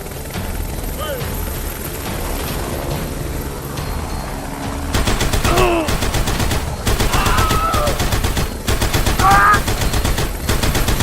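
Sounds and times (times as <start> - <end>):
fast rattle of clicks: 4.9 - 11.0.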